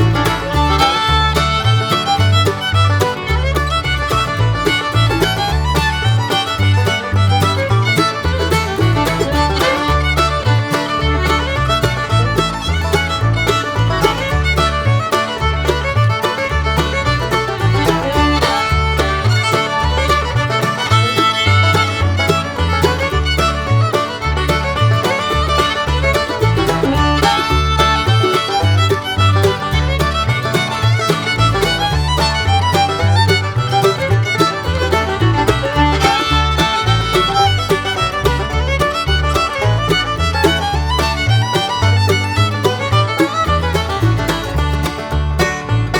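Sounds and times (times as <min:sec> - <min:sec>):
plucked bass line: 0:00.0 - 0:45.9
upbeat fiddle tune: 0:00.0 - 0:45.9.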